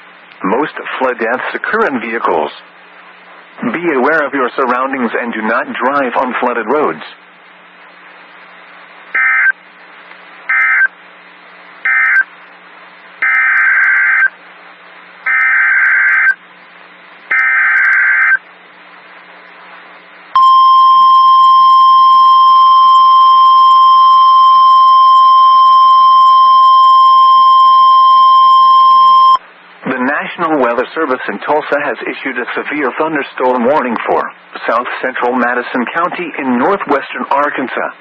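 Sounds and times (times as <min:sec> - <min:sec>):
single-pitch warning alarm tone: 0:10.5 - 0:10.9, 0:11.8 - 0:12.3, 0:15.3 - 0:16.4, 0:20.4 - 0:29.4.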